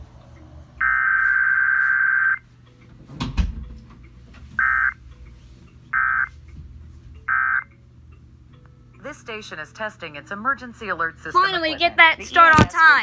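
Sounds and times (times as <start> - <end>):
faint steady hum: 0.0 - 13.0
shrill warbling data tones: 0.8 - 2.4.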